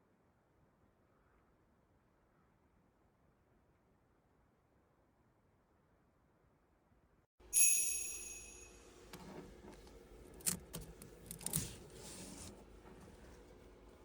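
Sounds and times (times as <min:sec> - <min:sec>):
high metallic chime: 0:07.5 - 0:09.0.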